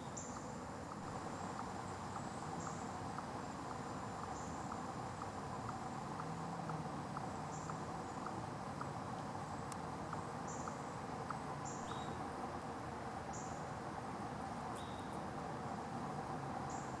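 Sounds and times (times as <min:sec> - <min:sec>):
chipmunk chirping: 0:00.0 - 0:12.3
outdoor background hiss: 0:00.0 - 0:17.0.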